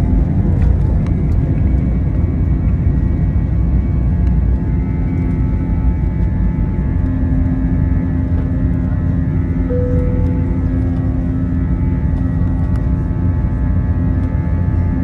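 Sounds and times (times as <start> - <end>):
jet engine whine: 0.0 - 15.0
jet engines rumbling: 0.0 - 15.0.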